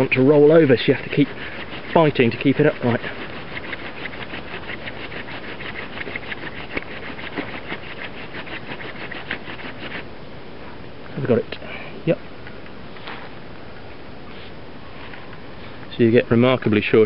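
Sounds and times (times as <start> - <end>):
hand drill rubbing wood: 0.0 - 10.1.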